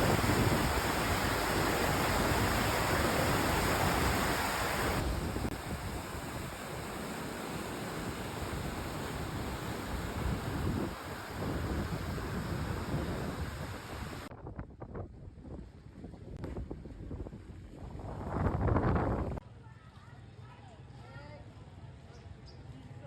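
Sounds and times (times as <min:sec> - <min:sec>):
water rushing: 0:00.0 - 0:14.3
wind rushing: 0:00.0 - 0:14.6.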